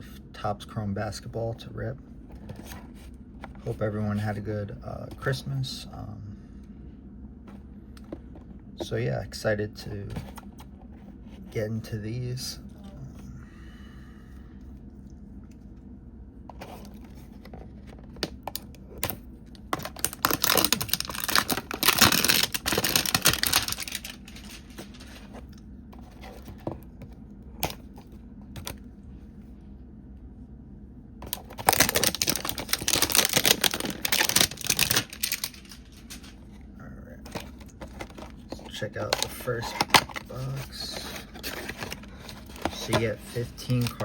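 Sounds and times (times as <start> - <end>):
packaging crinkling and tearing: 18.2 - 25.5, 31.2 - 36.5, 37.2 - 44.0.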